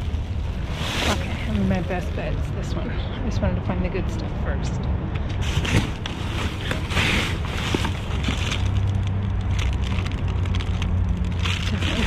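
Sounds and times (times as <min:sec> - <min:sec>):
bags rustling and items clattering: 0:00.0 - 0:02.9, 0:05.4 - 0:12.0
steady low rumble: 0:00.0 - 0:12.0.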